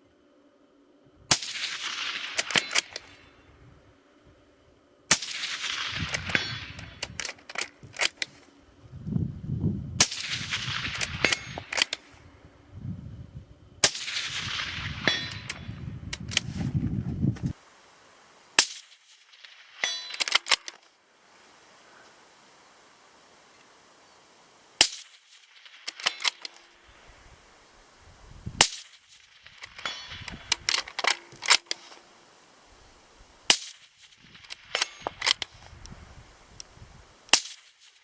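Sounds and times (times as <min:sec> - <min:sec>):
suppressed rifle shots with echo: 0:01.3 - 0:03.4, 0:05.1 - 0:07.0, 0:13.8 - 0:15.7, 0:18.6 - 0:20.8, 0:24.8 - 0:27.2, 0:28.6 - 0:32.0, 0:33.5 - 0:35.8, 0:37.3 - 0:38.0
sharp clicks: 0:05.9 - 0:08.4, 0:19.8 - 0:20.9, 0:24.8 - 0:27.0, 0:28.6 - 0:32.1, 0:33.5 - 0:36.0.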